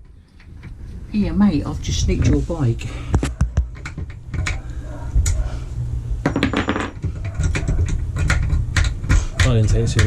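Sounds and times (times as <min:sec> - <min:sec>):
padlock clinking and rattling: 0:06.3 - 0:10.0.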